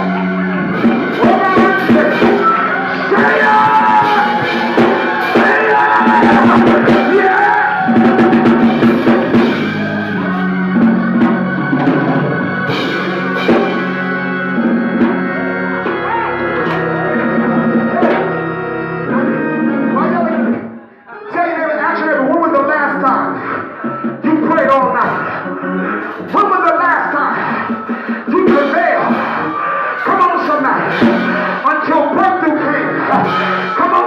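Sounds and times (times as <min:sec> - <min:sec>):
drum kit: 0:00.0 - 0:20.8, 0:23.8 - 0:32.4, 0:33.1 - 0:34.0
sustained keyboard chords: 0:00.0 - 0:34.0.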